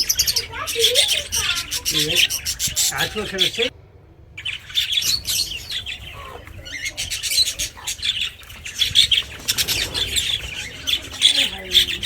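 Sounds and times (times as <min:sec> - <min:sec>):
birds squawking and chirping: 0:00.0 - 0:12.0.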